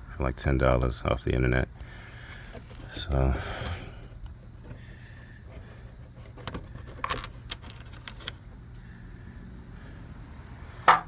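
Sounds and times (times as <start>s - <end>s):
steady low hum: 0.0s - 11.0s
plastic clamps clicking and rattling: 6.2s - 8.4s.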